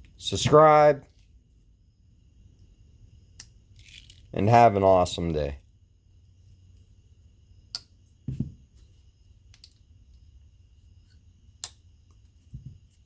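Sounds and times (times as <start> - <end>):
soft knocks: 8.3 - 8.6.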